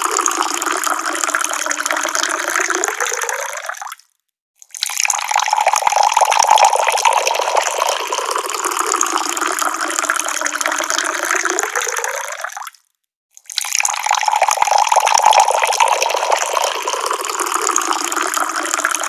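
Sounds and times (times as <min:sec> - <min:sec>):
water running from a tap: 0:04.8 - 0:12.1, 0:13.6 - 0:19.0.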